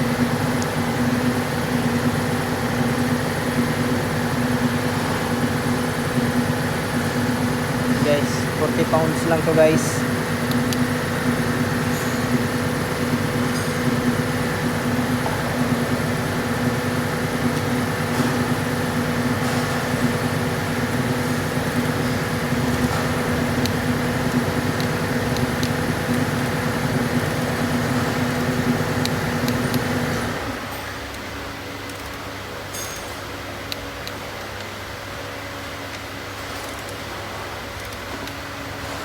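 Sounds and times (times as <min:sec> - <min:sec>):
motor humming: 0:00.0 - 0:30.6.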